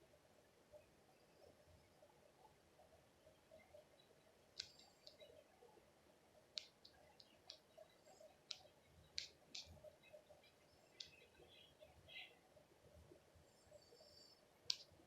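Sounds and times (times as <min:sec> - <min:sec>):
faint sharp clicks: 0:03.5 - 0:05.6, 0:06.5 - 0:12.3, 0:13.1 - 0:15.0.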